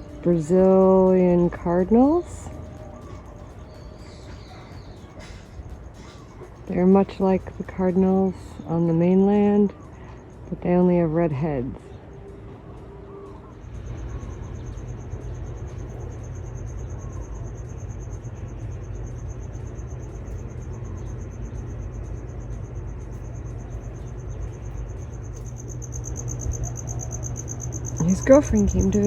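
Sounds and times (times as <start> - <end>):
insect trilling: 13.4 - 29.0.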